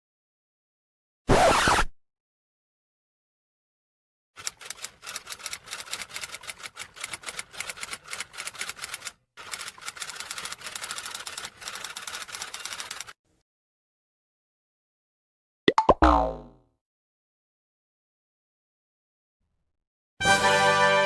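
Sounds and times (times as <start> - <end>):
fast typing clicks: 4.4 - 13.2.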